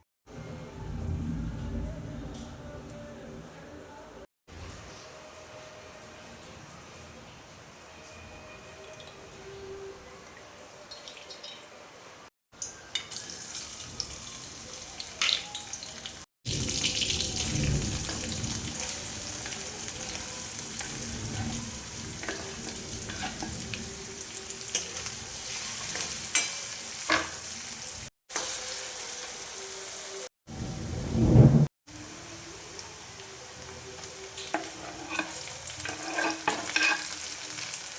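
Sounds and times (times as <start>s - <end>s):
food sizzling in hot oil: 12.7s - 30.3s, 31.9s - 37.9s.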